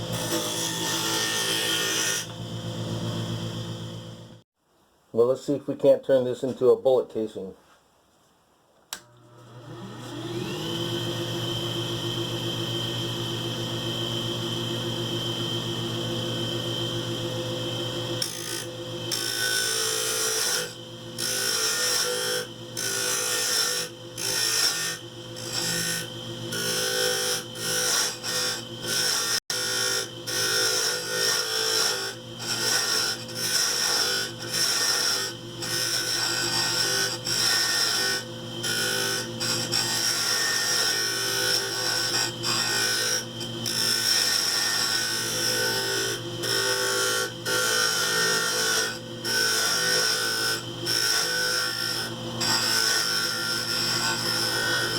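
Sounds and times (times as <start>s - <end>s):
wood lathe running: 18.2s - 54.9s.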